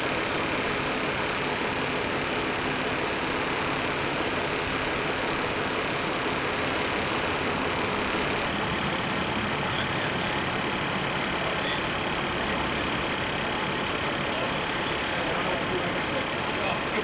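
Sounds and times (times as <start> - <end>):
vehicle engine idling: 0.0 - 17.0.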